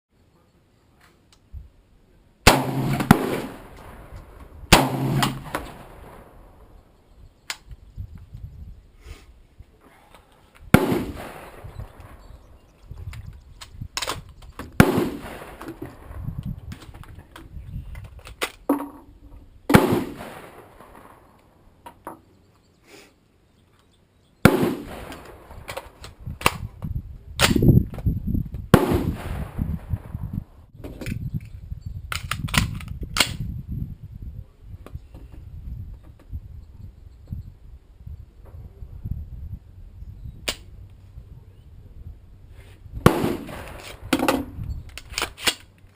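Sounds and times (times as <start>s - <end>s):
sharp crack: 2.4s - 6.7s, 10.6s - 12.2s, 13.6s - 16.9s, 19.7s - 21.5s, 24.4s - 26.7s, 28.7s - 30.1s, 40.5s - 40.7s, 43.0s - 45.9s
rifle shots echoing: 2.4s - 6.8s, 10.7s - 12.4s, 14.8s - 16.2s, 19.7s - 21.4s, 24.4s - 25.7s, 28.7s - 30.2s, 43.0s - 44.6s.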